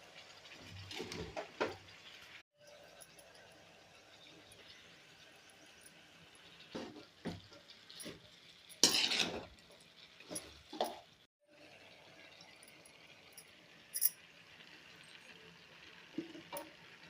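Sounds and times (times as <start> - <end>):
low sizzle: 0.0 - 17.0
spoon scraping in a pan: 6.7 - 11.1.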